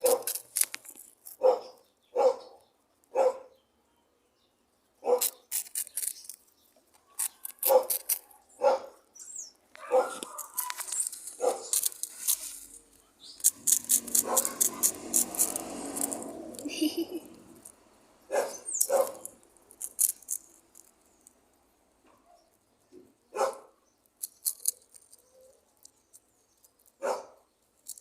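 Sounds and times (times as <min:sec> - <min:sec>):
small dog barking: 0:00.0 - 0:00.3, 0:01.4 - 0:03.5, 0:05.0 - 0:05.4, 0:07.6 - 0:09.0, 0:09.8 - 0:10.8, 0:11.4 - 0:11.8, 0:13.9 - 0:15.4, 0:18.3 - 0:19.3, 0:23.3 - 0:23.8, 0:27.0 - 0:27.4
dog crunching snack: 0:00.0 - 0:01.6, 0:05.2 - 0:08.4, 0:09.8 - 0:17.8, 0:18.4 - 0:21.2, 0:24.2 - 0:27.2.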